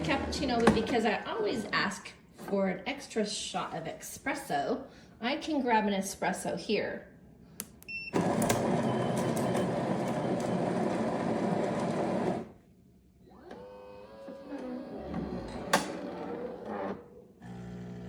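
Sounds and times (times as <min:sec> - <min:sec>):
espresso machine brewing hum: 0:17.4 - 0:18.0.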